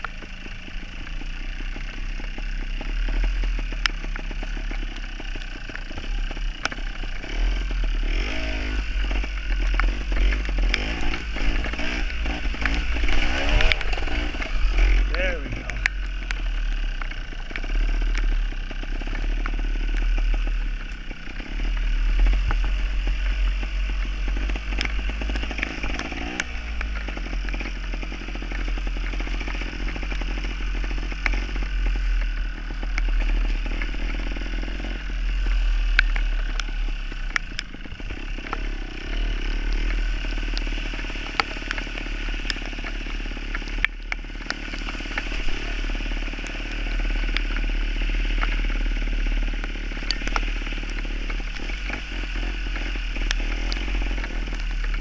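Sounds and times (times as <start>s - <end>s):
two-stroke motorcycle engine revving: 0.0s - 55.0s
sharp clicks: 8.9s - 38.8s.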